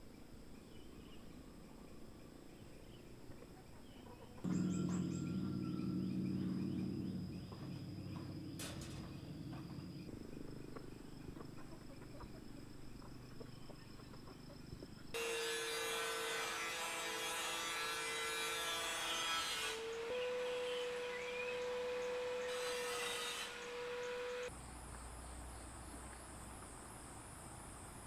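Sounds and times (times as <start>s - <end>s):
constant low hum: 0.0s - 28.0s
insects trilling: 4.4s - 16.7s.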